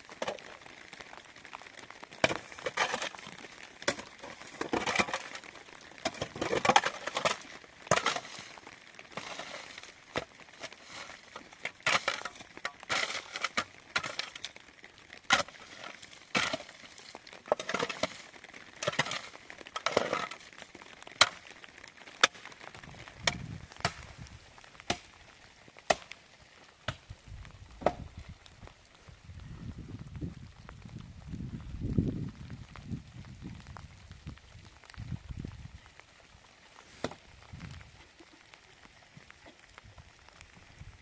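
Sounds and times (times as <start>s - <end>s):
rustling and scraping: 2.2s - 14.6s, 15.3s - 21.4s.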